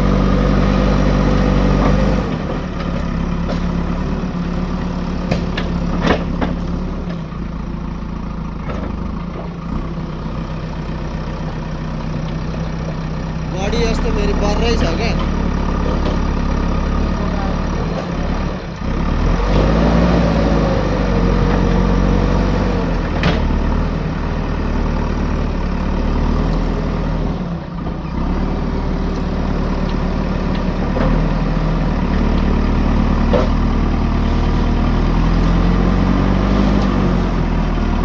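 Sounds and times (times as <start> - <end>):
diesel engine under load: 0.0 - 38.0.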